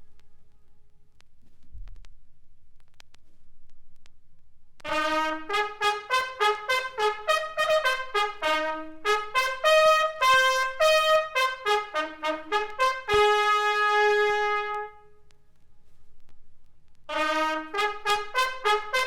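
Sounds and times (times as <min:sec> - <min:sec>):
military bugle call: 0:04.8 - 0:15.2, 0:17.1 - 0:19.0.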